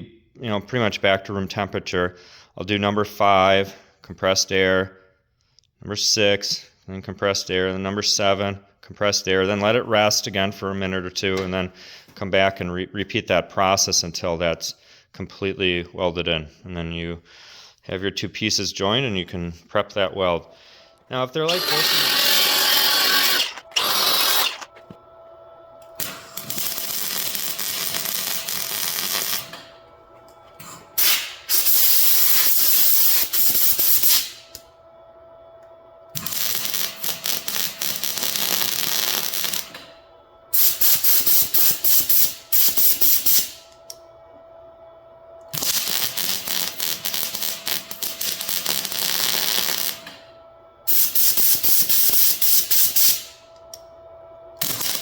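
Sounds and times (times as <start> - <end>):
welder crackling: 21.0 - 25.0, 25.8 - 34.7, 36.1 - 39.8, 40.6 - 43.7, 45.5 - 50.2, 50.9 - 53.4, 54.6 - 55.0
compressed air hiss: 21.5 - 24.7, 31.0 - 34.4.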